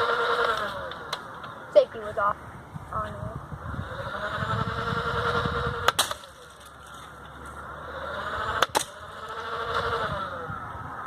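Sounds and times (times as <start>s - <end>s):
motor whine: 0.0s - 11.0s
toy blaster firing darts: 8.4s - 9.8s.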